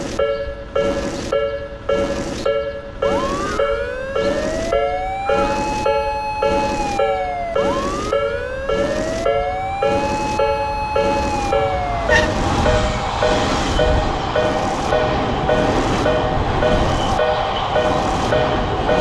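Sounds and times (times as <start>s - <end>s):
level-crossing alarm dinging: 0.0s - 19.0s
siren wailing: 3.0s - 17.3s.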